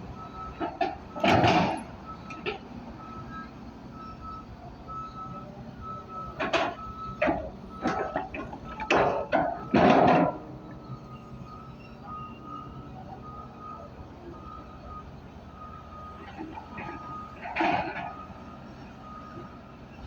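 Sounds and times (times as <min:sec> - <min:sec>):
loud clanks: 0:06.4 - 0:10.5.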